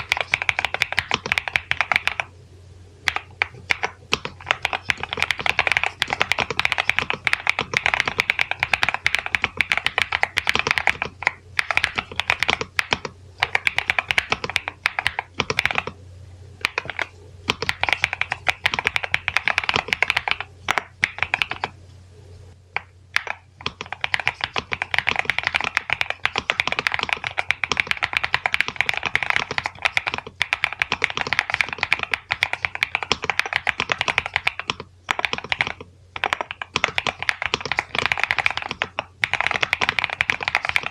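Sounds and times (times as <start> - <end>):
mechanical keyboard typing: 0.0 - 2.3, 3.0 - 16.0, 16.6 - 21.8, 22.8 - 40.9.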